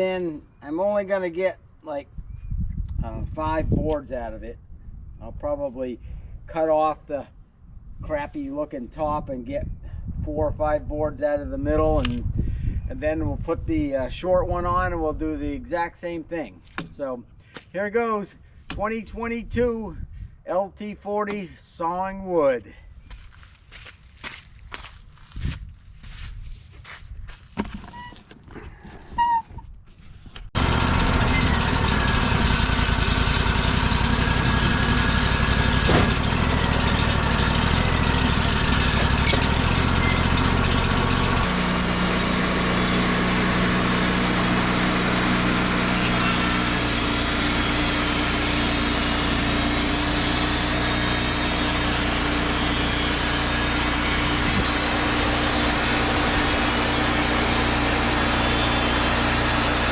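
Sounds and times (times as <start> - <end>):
sawmill engine running: 30.6 - 59.9.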